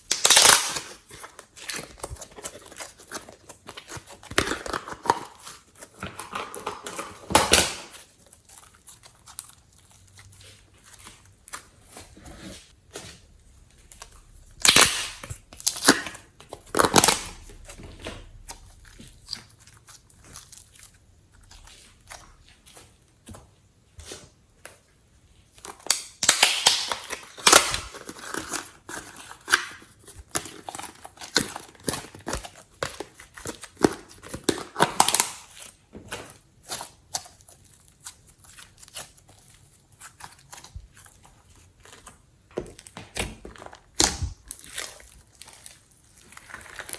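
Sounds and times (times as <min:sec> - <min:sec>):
slime squeezed by hand crackling: 0:00.0 - 0:03.2, 0:13.8 - 0:22.8.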